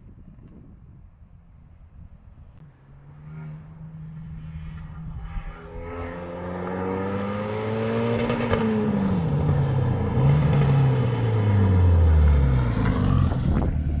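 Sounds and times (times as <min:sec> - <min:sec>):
exhaust pop: 0:12.6 - 0:14.0.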